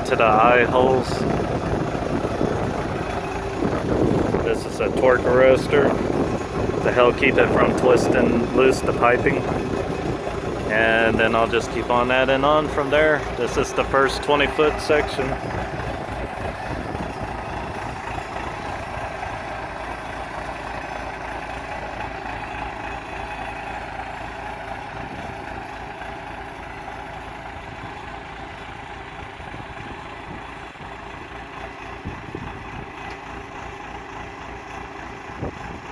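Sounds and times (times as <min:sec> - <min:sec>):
engine idling: 0:00.0 - 0:35.9.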